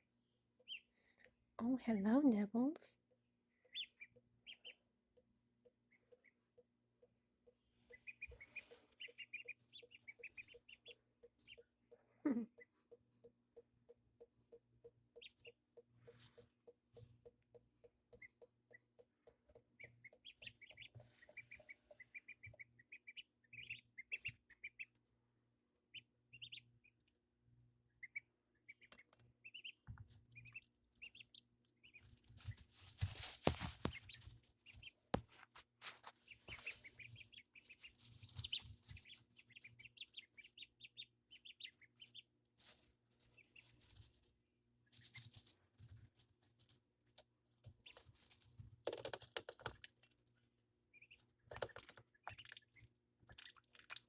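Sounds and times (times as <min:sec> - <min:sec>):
ducklings peeping: 0:00.0 - 0:25.2, 0:25.8 - 0:54.0
rustling and scuffling: 0:32.0 - 0:40.6, 0:41.2 - 0:52.2.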